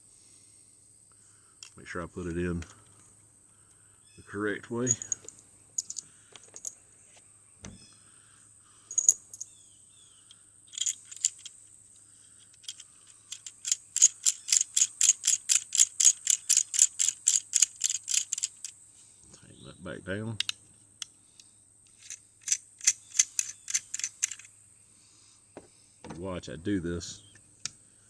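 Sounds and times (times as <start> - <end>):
fast sharp clicks of screwing: 4.9 - 6.7, 10.7 - 11.6, 12.4 - 18.8, 21.9 - 24.5
metal parts clicking and tapping: 4.9 - 6.8, 8.9 - 9.5, 10.7 - 11.6, 12.4 - 18.8, 21.9 - 24.5.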